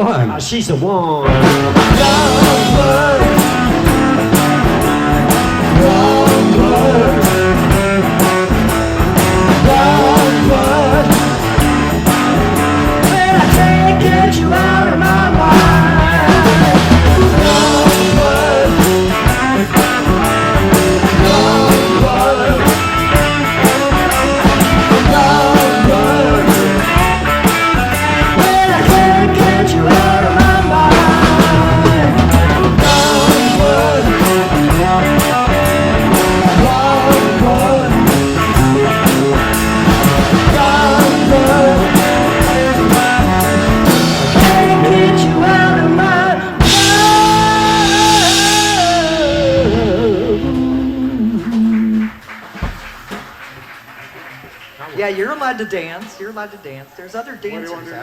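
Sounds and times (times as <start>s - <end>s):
live rock band playing: 0.0s - 56.0s.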